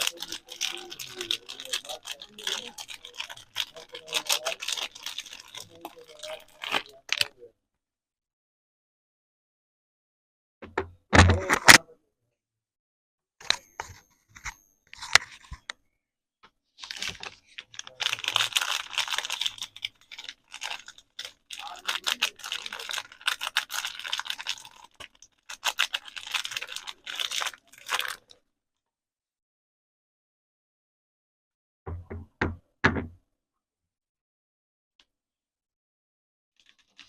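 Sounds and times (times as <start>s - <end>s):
packaging crinkling and tearing: 0.0s - 7.4s, 16.8s - 28.4s, 36.6s - 37.0s.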